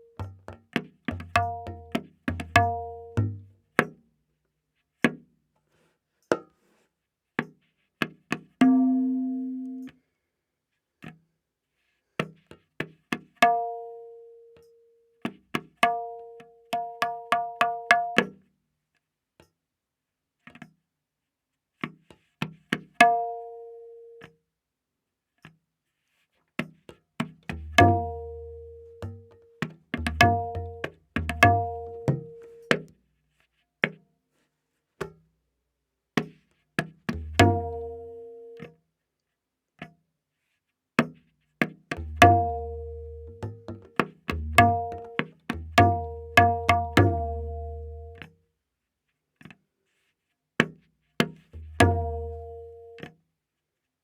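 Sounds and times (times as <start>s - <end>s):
tabla strokes: 0.0s - 4.1s, 7.4s - 9.9s, 15.2s - 18.4s, 25.9s - 34.0s, 34.8s - 35.2s, 36.2s - 38.8s, 39.8s - 48.3s, 49.4s - 53.2s.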